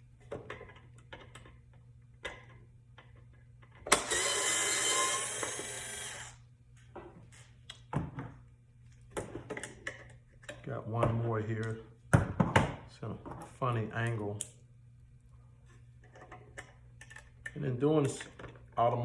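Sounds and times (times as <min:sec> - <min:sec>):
power drill running: 0:03.9 - 0:06.4.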